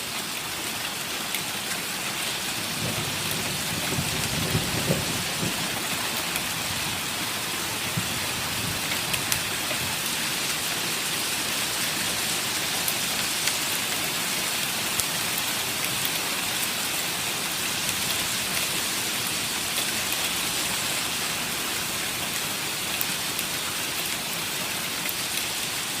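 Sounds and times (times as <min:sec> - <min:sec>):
rain hissing: 0:00.1 - 0:26.0
hailstones ticking on hard surfaces: 0:01.2 - 0:11.1.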